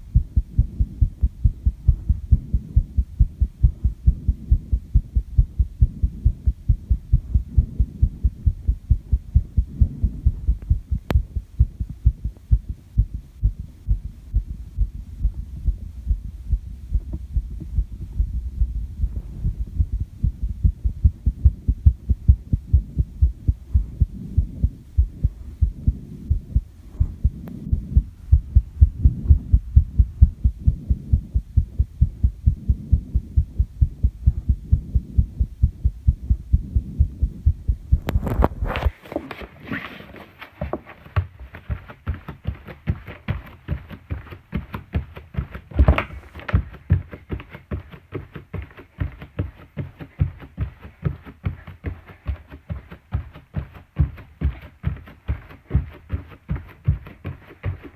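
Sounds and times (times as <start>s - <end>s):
heartbeat thumps: 0.0s - 57.9s
clicking and rubbing: 38.0s - 41.9s.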